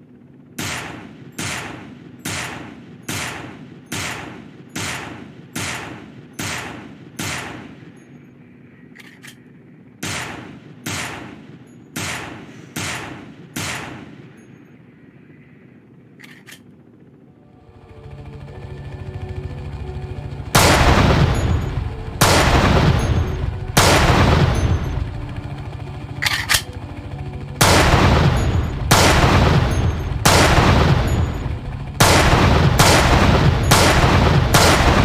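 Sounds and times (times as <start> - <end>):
handgun shots: 0.6 - 8.0, 10.0 - 14.4, 26.2 - 26.7, 27.6 - 31.4, 32.0 - 35.0
short clicks: 8.9 - 9.5, 16.2 - 16.7.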